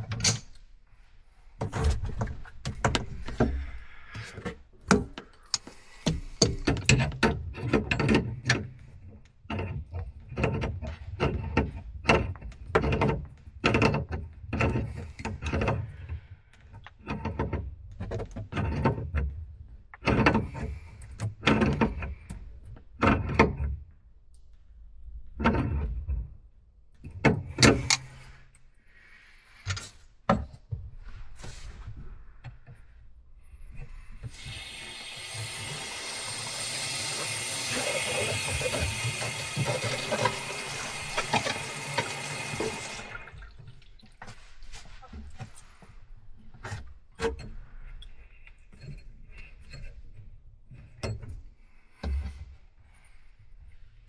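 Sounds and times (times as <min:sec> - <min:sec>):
knocks and clunks: 0:01.6 - 0:23.8, 0:33.6 - 0:47.8
water running: 0:34.2 - 0:44.8.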